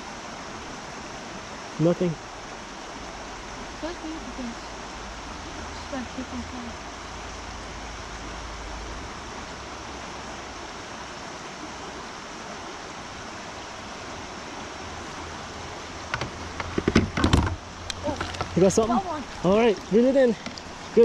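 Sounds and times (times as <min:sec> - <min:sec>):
river water rushing over rocks: 0:00.0 - 0:21.0
short knocks or clatters: 0:16.1 - 0:18.6.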